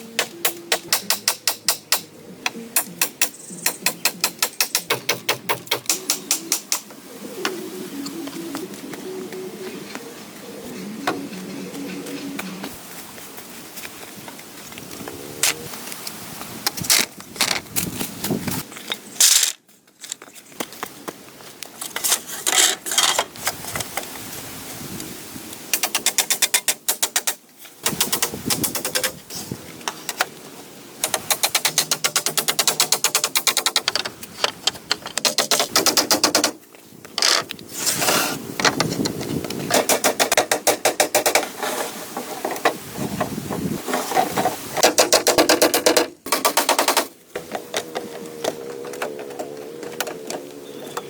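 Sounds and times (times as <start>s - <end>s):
clicks and knocks of woodwork: 31.0s - 37.6s
rapid knocking of tools on wood: 39.7s - 41.5s, 44.8s - 48.0s.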